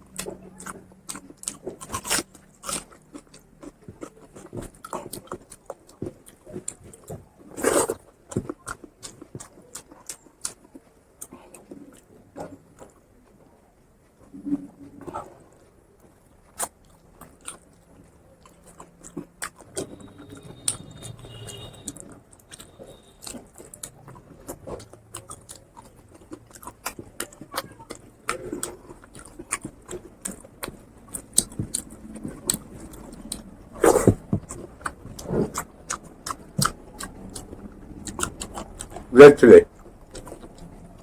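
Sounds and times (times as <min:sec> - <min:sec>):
chewing and wet mouth clicks: 0:00.0 - 0:07.2, 0:15.1 - 0:39.1, 0:39.7 - 0:41.0.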